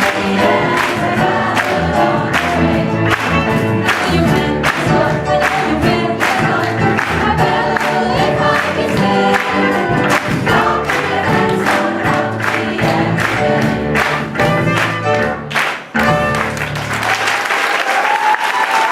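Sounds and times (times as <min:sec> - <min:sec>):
choir singing: 0:00.0 - 0:14.3
instrumental accompaniment with beat: 0:00.0 - 0:17.2.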